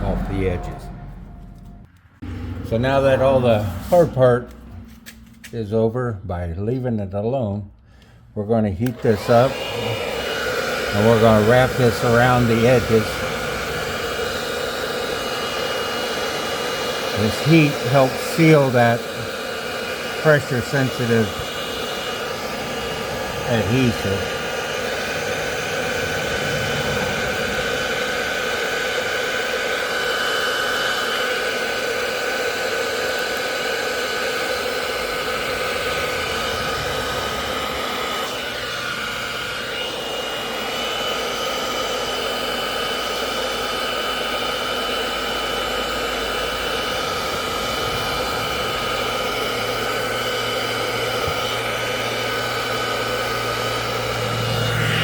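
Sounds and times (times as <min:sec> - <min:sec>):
heat gun fan whining: 0:08.0 - 0:55.0.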